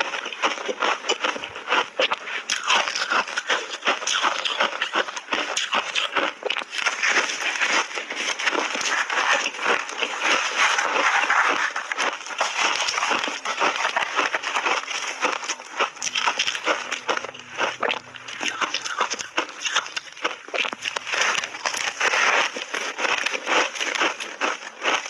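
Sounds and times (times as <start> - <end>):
crunching ice being chewed: 0.0 - 25.0.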